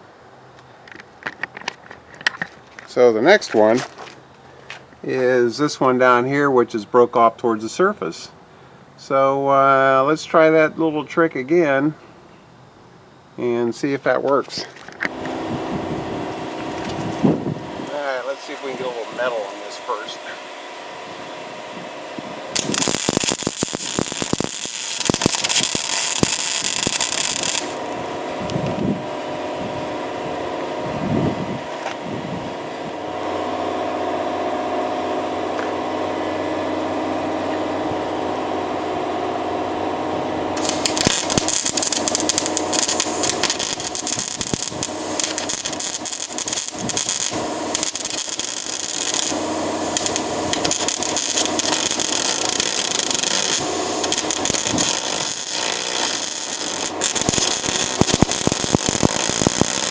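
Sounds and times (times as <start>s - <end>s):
steady hum: 15.0s - 59.9s
welder arc crackling: 16.3s - 20.2s, 22.5s - 29.0s, 40.5s - 59.9s.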